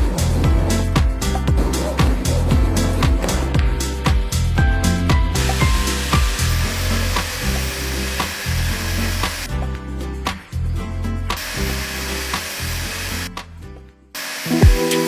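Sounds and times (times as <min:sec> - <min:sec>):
background music: 0:00.0 - 0:15.0
power tool whirring: 0:05.4 - 0:09.5, 0:11.4 - 0:13.3, 0:14.2 - 0:14.9.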